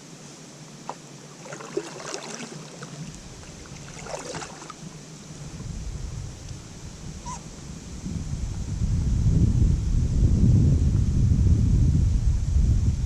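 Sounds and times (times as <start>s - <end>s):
steady low hiss: 0.0s - 13.0s
water splashing against kayak: 0.7s - 6.6s.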